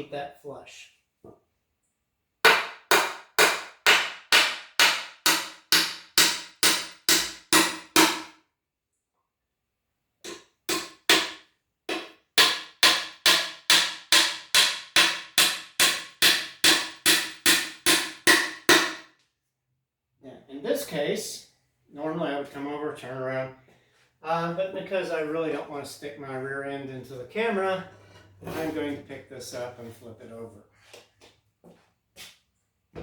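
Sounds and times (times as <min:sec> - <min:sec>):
hammer driving nails into wood: 0:02.5 - 0:08.3, 0:10.2 - 0:19.0.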